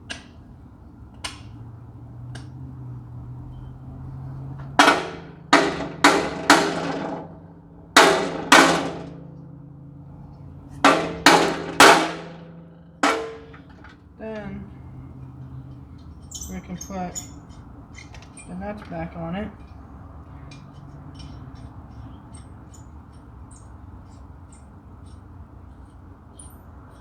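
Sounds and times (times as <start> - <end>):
hammer striking metal: 4.6 - 7.4, 8.0 - 9.6, 10.7 - 14.0.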